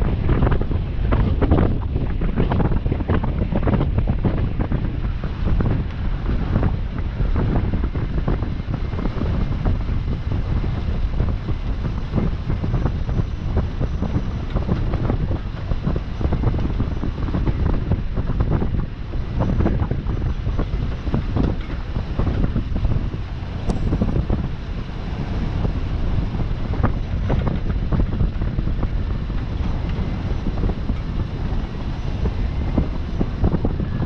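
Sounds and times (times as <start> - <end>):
wind blowing on microphone: 0.0 - 34.0.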